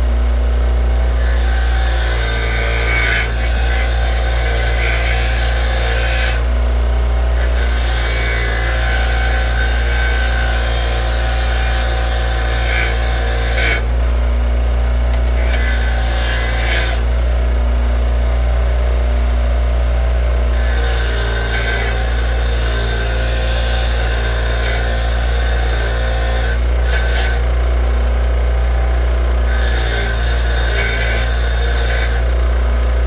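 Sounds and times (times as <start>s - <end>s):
motor humming: 0.0s - 33.0s
wire wheel scraping metal: 29.4s - 32.3s.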